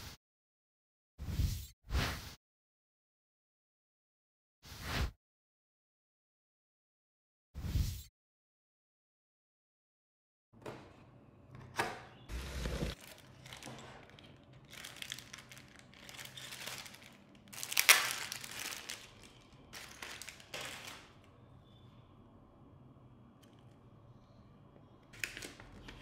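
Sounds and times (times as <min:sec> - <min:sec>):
packaging crinkling and tearing: 0:12.9 - 0:21.3, 0:25.2 - 0:26.0.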